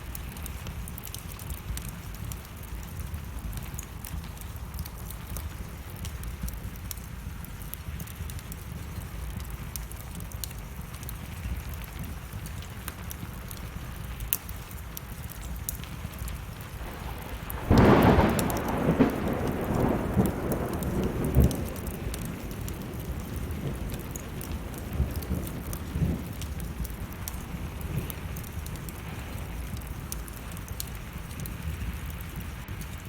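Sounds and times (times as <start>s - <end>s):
burning wood crackling: 0.0s - 33.0s
steady rain: 0.0s - 33.0s
thunder rumbling: 16.1s - 32.7s.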